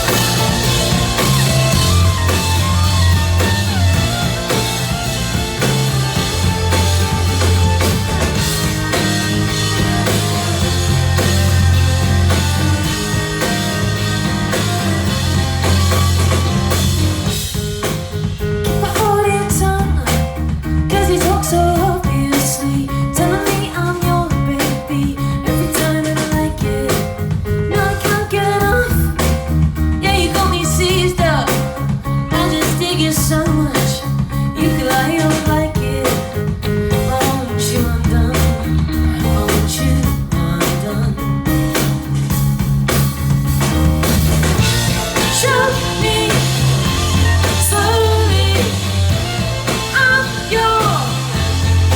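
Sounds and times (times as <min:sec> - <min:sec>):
melodic line over bass: 0:00.0 - 0:17.8, 0:37.7 - 0:51.9
loud punk band playing live: 0:00.0 - 0:51.9.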